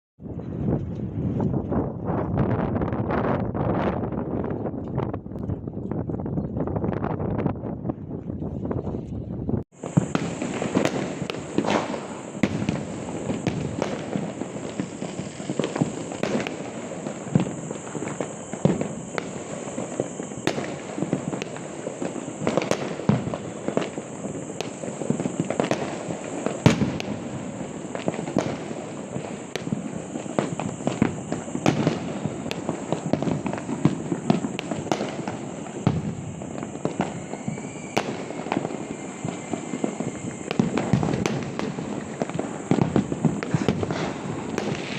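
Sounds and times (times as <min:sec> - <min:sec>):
fireworks banging and crackling: 0:00.2 - 0:44.9.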